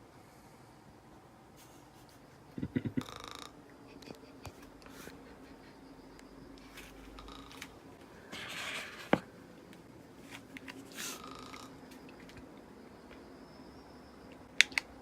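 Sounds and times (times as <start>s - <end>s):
faint steady hum: 0.0s - 15.0s
sharp click: 14.6s - 14.9s.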